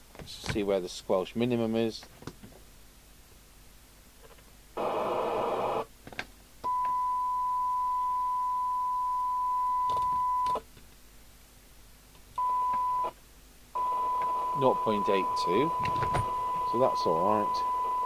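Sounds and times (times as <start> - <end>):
radio receiver hiss: 4.8 - 5.9, 13.8 - 18.0
steady test tone: 13.8 - 18.0.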